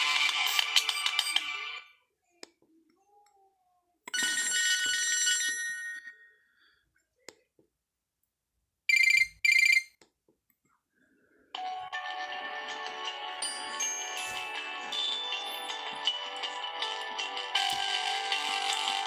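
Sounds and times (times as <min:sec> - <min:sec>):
chiming ringtone tune: 0:08.9 - 0:09.9, 0:11.6 - 0:19.0
short loud electronic rings: 0:08.9 - 0:09.9.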